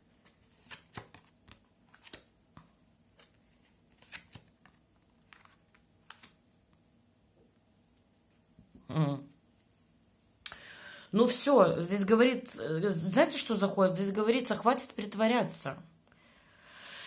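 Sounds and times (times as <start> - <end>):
cards clicking and rustling: 0.2 - 6.6.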